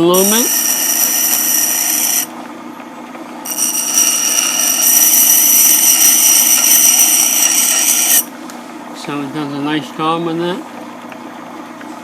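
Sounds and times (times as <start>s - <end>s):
motor low hum: 0.0s - 9.2s
steel grinding on sharpening wheel: 0.1s - 2.3s, 3.5s - 8.3s.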